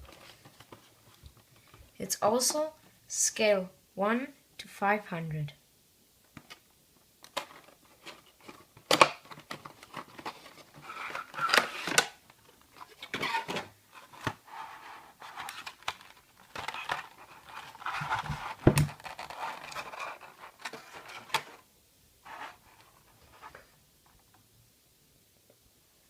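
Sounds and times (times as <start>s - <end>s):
packaging rustling: 7.2s - 21.6s.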